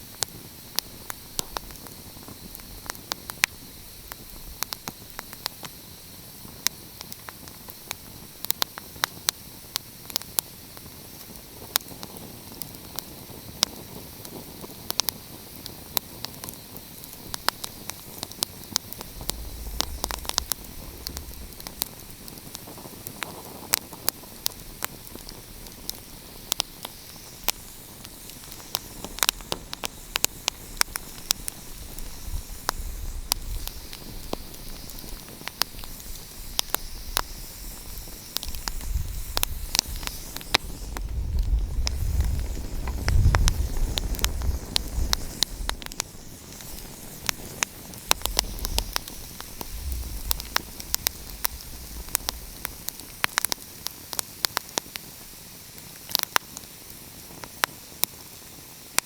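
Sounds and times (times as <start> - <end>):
wood fire crackling and popping: 0.0 - 59.0
low rumble: 19.0 - 22.5, 48.1 - 53.4.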